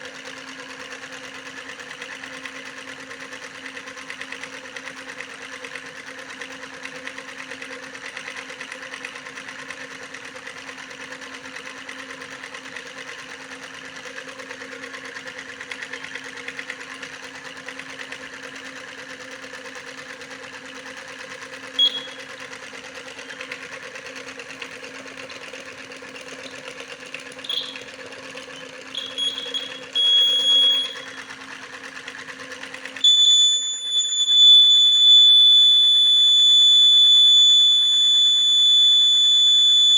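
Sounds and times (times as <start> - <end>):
electronic buzzer beeping: 21.8 - 22.3, 27.5 - 27.8, 29.0 - 31.3, 33.0 - 39.9.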